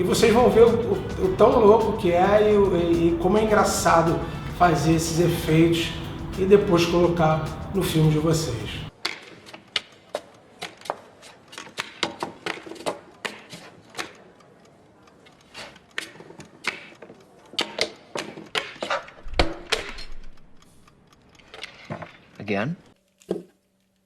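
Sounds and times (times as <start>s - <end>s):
sharp irregular taps and clicks: 0.0s - 8.9s.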